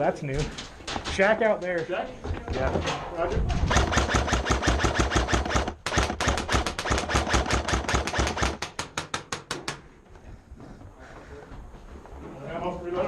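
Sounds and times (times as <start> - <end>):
airsoft rifle firing rapidly: 3.7 - 9.4.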